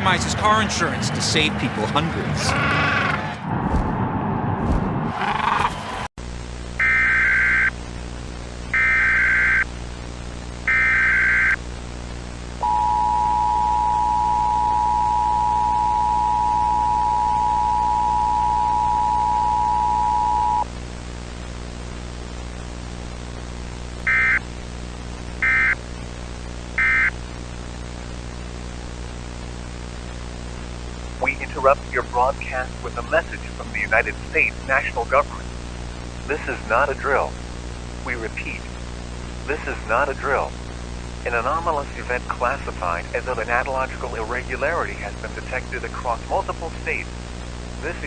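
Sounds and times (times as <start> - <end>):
two-tone attention signal: 12.6 - 20.6
steady hum and hiss: 20.8 - 48.0.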